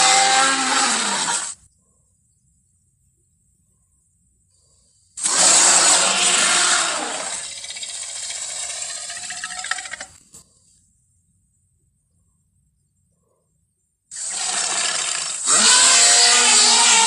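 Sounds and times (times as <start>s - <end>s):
dinosaur roar and growl: 5.2s - 10.1s, 14.2s - 17.0s.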